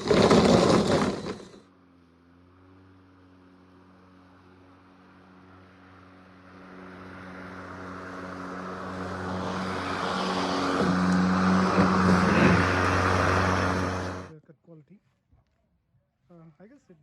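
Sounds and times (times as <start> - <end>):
electric lawn mower humming: 0.0 - 1.6, 2.2 - 14.3
grass being cut: 0.0 - 1.6, 7.0 - 14.3.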